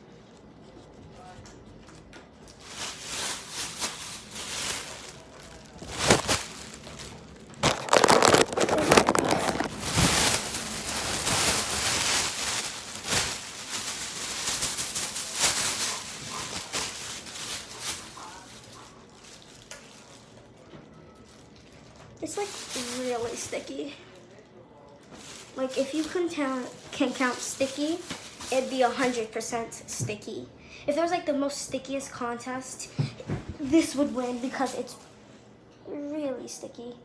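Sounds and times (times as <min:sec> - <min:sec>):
hands squishing sticky slime: 0:07.6 - 0:11.9.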